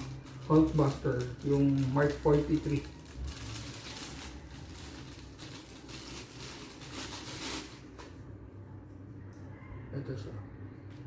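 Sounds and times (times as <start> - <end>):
toy packaging rustling: 0.0 - 8.1.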